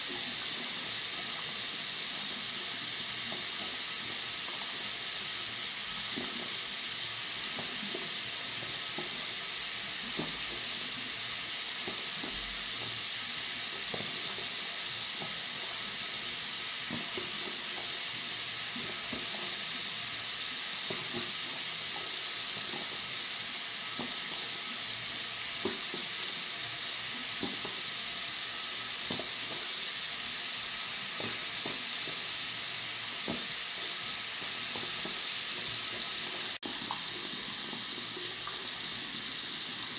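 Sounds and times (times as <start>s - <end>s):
water running from sink tap: 0.0s - 39.9s
water splashes and drips: 0.0s - 39.9s.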